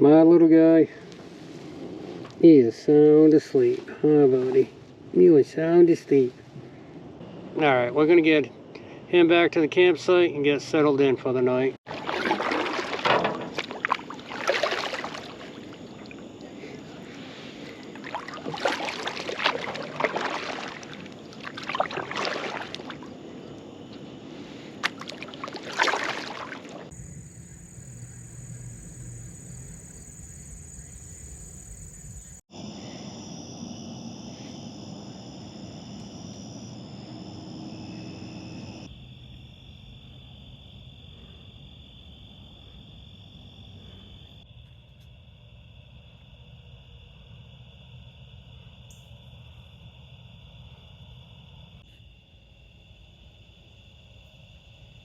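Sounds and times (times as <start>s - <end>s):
crickets and insects chirping: 0.0s - 55.0s
canoe paddle splashing in water: 11.9s - 23.2s, 24.8s - 27.2s.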